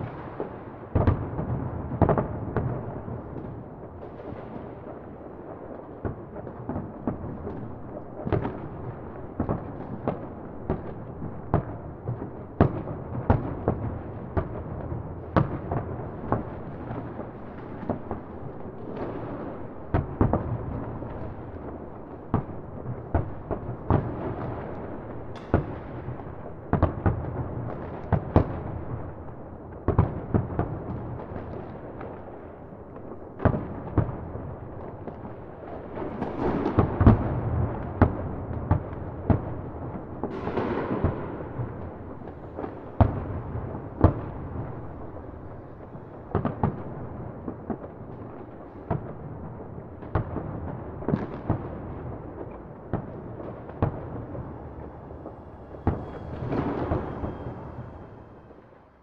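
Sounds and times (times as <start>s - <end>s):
sharp bangs and pops: 22.2s - 28.9s, 35.9s - 58.8s
steady low rumble: 53.7s - 59.0s.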